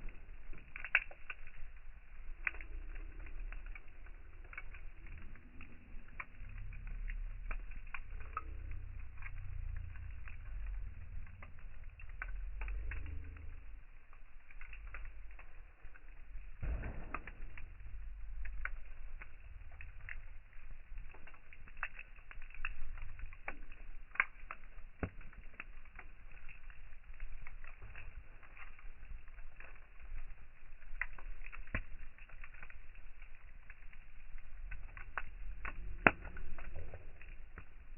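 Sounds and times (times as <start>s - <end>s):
campfire crackling and popping: 0.0s - 37.9s
low rumble: 0.0s - 37.9s.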